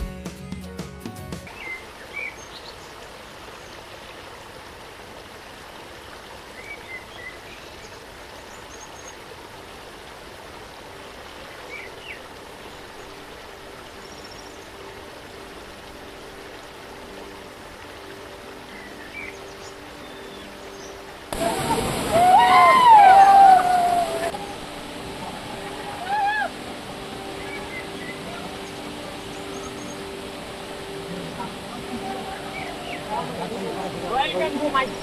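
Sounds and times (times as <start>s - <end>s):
waterfall rushing: 9.2s - 35.0s.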